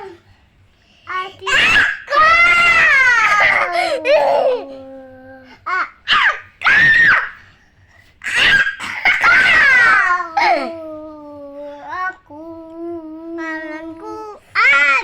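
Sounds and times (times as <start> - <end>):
child laughing: 2.6 - 6.5.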